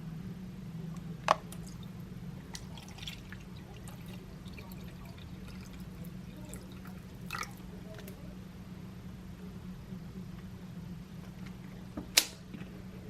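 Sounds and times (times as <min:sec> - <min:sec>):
steady low hum: 0:00.0 - 0:13.0
water pouring into reservoir: 0:01.4 - 0:08.2.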